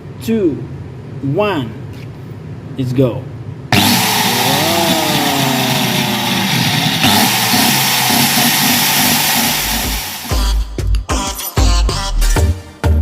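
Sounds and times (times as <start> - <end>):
falling whine: 3.7 - 10.4
loud motor running with hiss: 3.7 - 10.4.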